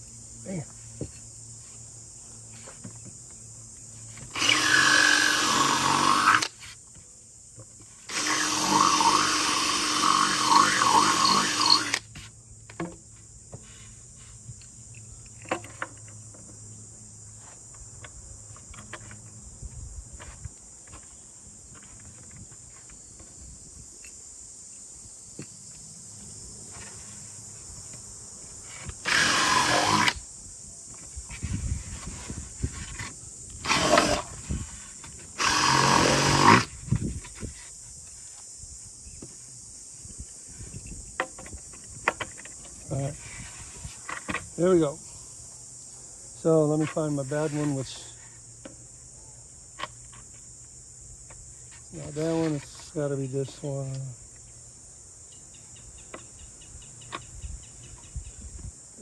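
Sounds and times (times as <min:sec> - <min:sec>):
power drill boring into wood: 0:04.3 - 0:06.5, 0:08.1 - 0:12.0, 0:29.0 - 0:30.2, 0:33.6 - 0:34.4, 0:35.4 - 0:36.7
handling clicks and knocks: 0:14.6 - 0:16.6.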